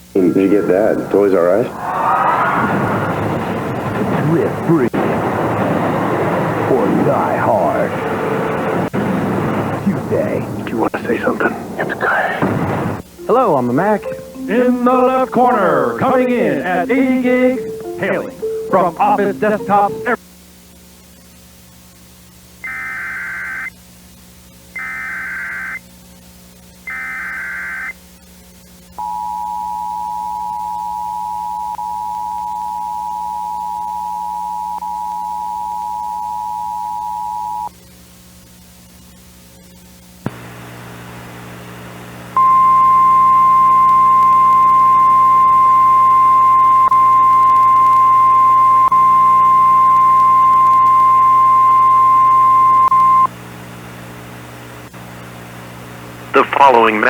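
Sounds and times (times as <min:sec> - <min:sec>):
loud steady high tone: 0:00.0 - 0:02.5, 0:13.2 - 0:20.2, 0:29.0 - 0:37.7, 0:42.4 - 0:53.3
low hum: 0:00.0 - 0:04.2, 0:42.4 - 0:55.7
digital header data bursts: 0:13.2 - 0:20.2
two-tone attention signal: 0:13.2 - 0:20.2, 0:29.0 - 0:37.7, 0:42.4 - 0:53.3.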